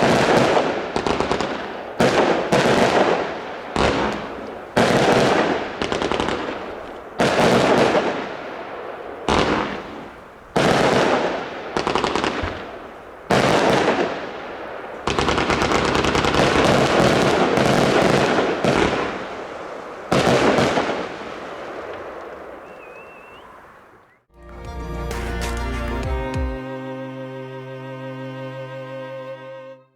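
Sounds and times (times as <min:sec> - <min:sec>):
fireworks firing volleys: 0:00.0 - 0:23.4.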